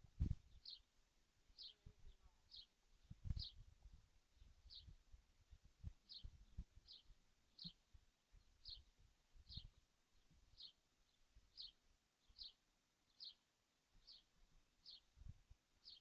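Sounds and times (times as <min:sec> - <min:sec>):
soft low thumps: 0:00.0 - 0:00.5, 0:03.0 - 0:04.0, 0:04.7 - 0:07.0
bird chirping: 0:00.3 - 0:00.9, 0:01.5 - 0:03.7, 0:04.3 - 0:05.0, 0:05.9 - 0:15.2, 0:15.8 - 0:16.0.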